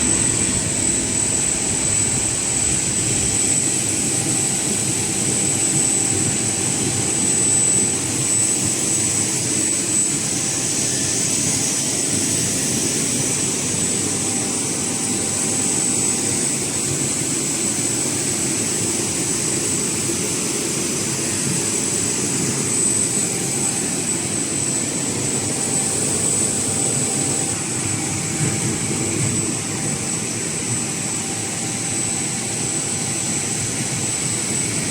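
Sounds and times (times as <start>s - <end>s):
machinery running: 0.0s - 4.8s
high-pitched whine: 0.0s - 34.9s.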